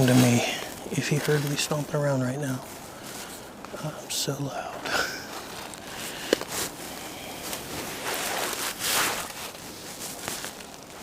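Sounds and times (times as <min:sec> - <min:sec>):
footsteps on forest floor: 0:00.0 - 0:03.8.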